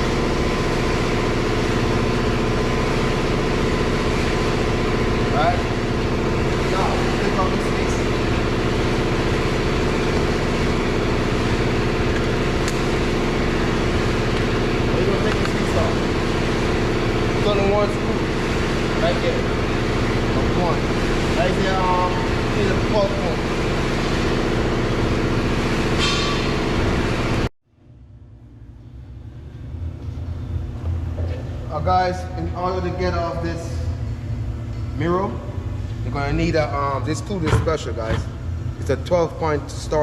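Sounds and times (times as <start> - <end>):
mechanical drone: 0.0 - 40.0.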